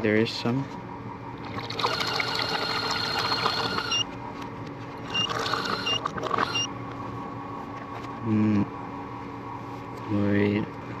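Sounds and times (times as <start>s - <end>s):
juice dispenser filling a cup: 1.4s - 4.1s, 5.1s - 6.7s.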